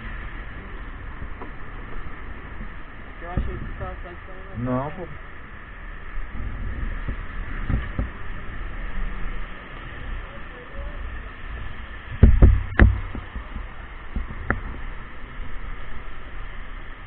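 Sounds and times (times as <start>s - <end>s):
wind rumble on microphone: 0.0s - 17.0s
wind-driven rain: 0.0s - 17.0s
sharp knocks: 12.2s - 13.3s.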